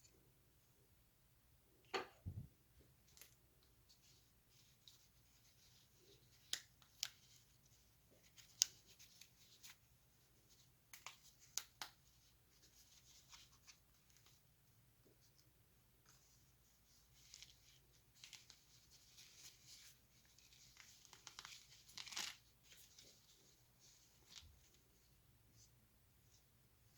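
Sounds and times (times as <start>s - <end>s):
packaging crinkling and rustling: 19.4s - 23.2s.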